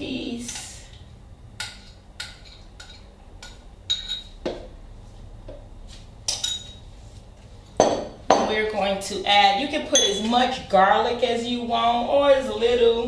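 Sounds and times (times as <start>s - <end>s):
utensil clinking against a dish: 1.6s - 4.4s.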